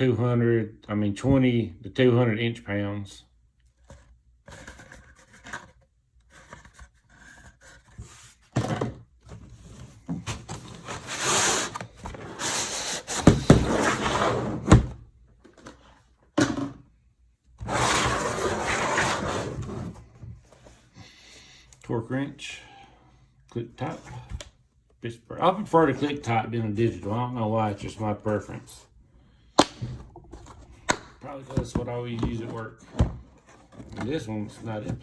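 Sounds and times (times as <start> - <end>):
rubbing and scraping packaging: 3.8 - 16.1, 17.6 - 20.9, 29.9 - 35.0.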